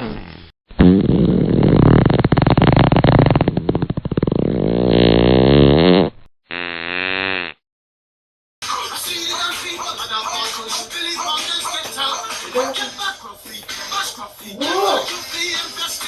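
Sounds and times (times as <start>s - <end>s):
buzzing fart sounds: 0.0s - 7.6s.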